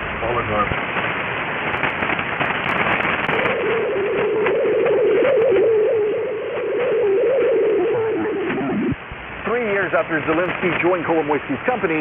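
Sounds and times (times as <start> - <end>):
radio hiss and static: 0.0 - 12.0
wavering radio tone: 3.1 - 9.0.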